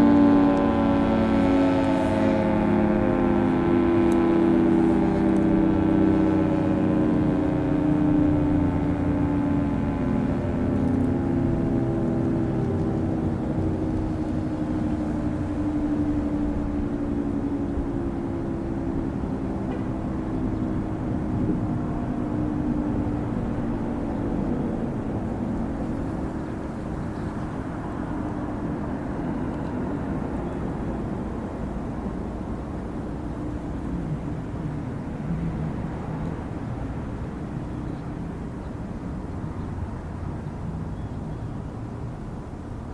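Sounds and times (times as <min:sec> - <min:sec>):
warning siren winding down: 0:00.0 - 0:26.1
low background rumble: 0:01.8 - 0:42.9.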